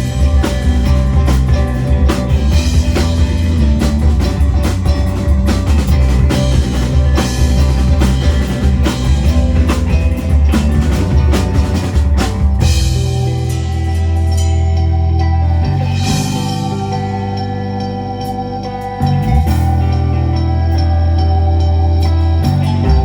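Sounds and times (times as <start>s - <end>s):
bass drum and snare hits: 0.0s - 13.4s
live rock band playing: 0.0s - 23.0s.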